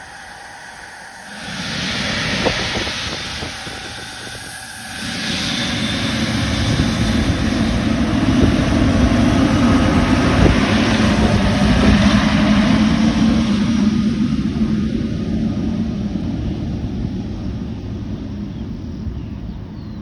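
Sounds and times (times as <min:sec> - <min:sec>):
jet engines roaring: 0:00.0 - 0:20.0.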